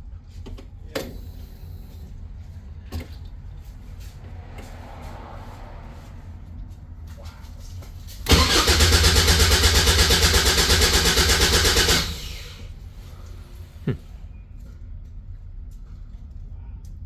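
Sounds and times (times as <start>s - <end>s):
engine cranking on starter: 8.2s - 12.8s.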